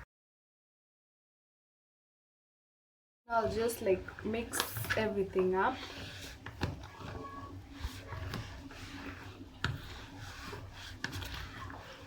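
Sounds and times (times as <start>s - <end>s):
food mixed in a bowl: 3.3s - 12.0s.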